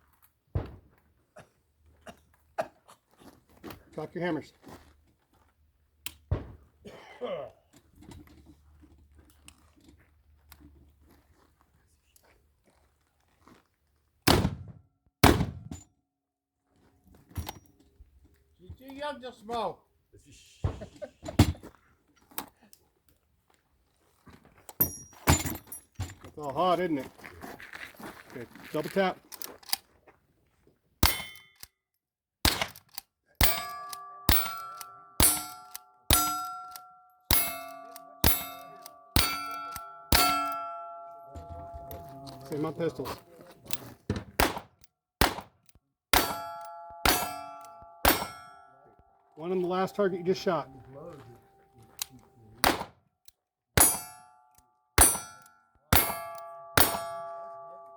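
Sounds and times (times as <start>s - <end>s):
shotgun blasts: 14.3s - 14.6s, 15.2s - 15.6s, 44.4s - 45.5s, 52.6s - 52.9s
steel plates ringing: 33.4s - 43.9s, 46.2s - 52.4s, 53.8s - 54.4s, 55.0s - 57.9s
gunshots: 44.4s - 45.5s, 52.6s - 52.9s.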